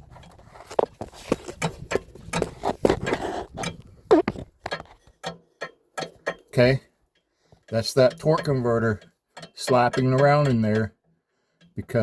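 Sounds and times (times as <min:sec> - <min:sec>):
torque converter clunking: 0:07.6 - 0:10.9.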